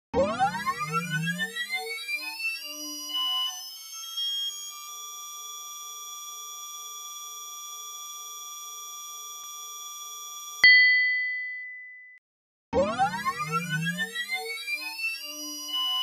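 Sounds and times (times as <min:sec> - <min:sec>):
bright ding: 0:10.6 - 0:12.2.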